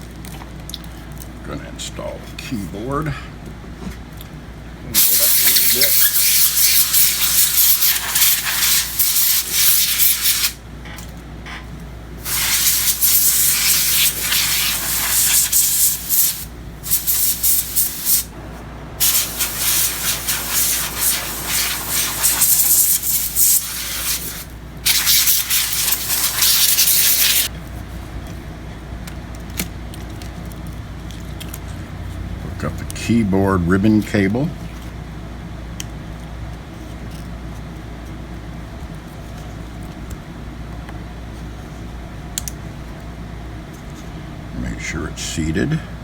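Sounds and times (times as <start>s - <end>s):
compressed air duster hissing: 5.0s - 10.6s, 12.2s - 18.3s, 19.0s - 27.5s.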